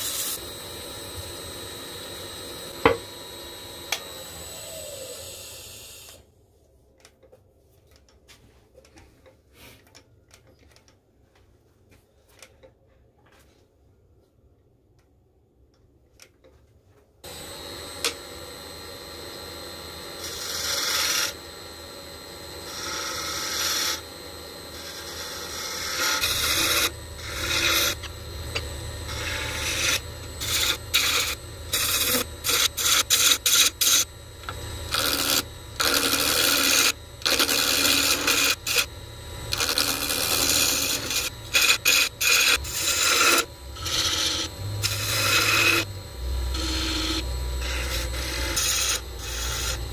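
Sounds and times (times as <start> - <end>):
wood lathe humming: 0.0 - 6.2, 17.2 - 49.9
lathe tool rasping on wood: 19.8 - 49.9.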